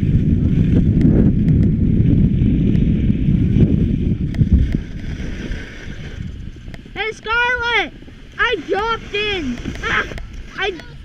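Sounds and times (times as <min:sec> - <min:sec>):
wind buffeting microphone: 0:00.0 - 0:11.0.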